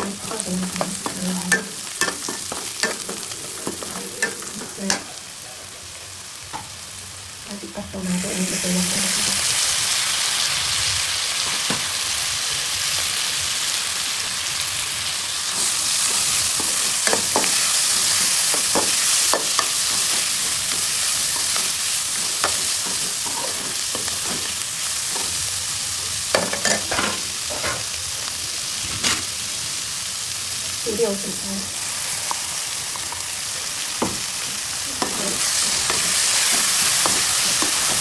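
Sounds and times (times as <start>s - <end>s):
vegetables sizzling in oil: 0.0s - 38.0s
spatula scraping a pan: 15.5s - 25.4s.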